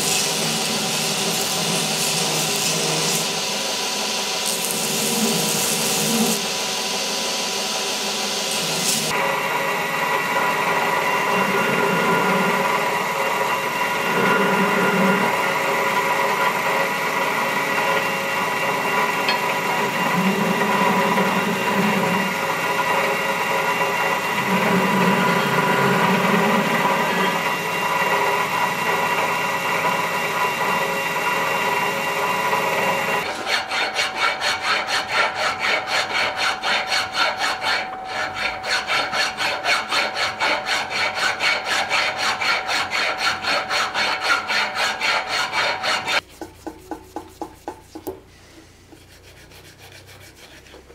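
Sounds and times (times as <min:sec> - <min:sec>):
power tool motor grinding: 0:10.0 - 0:46.2
hand tool scraping back and forth: 0:13.8 - 0:30.0, 0:32.2 - 0:50.9.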